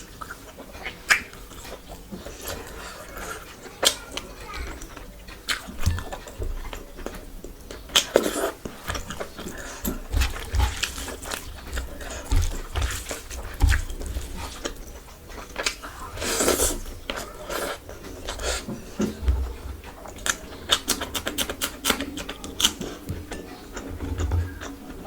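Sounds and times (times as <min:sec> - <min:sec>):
noisy slurps: 0:00.0 - 0:25.0
person chewing food: 0:00.0 - 0:25.0.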